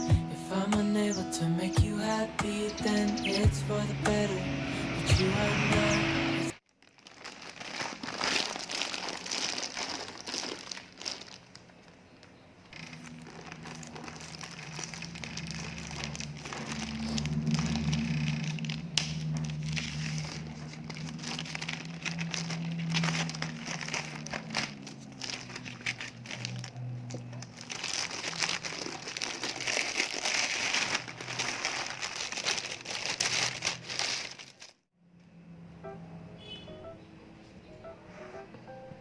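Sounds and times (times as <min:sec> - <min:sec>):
plastic packaging crinkling: 0:06.6 - 0:34.9.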